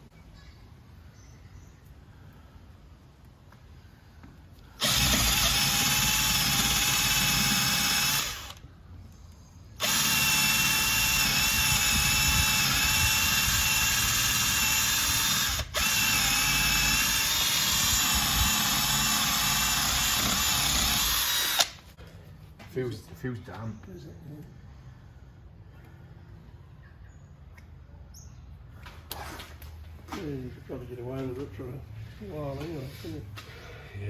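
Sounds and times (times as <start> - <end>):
power drill boring into fibreglass: 4.8 - 8.6, 9.8 - 21.8.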